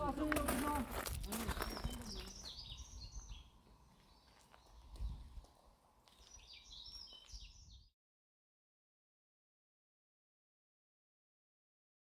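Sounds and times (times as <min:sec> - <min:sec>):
small bird singing: 0:01.4 - 0:07.9.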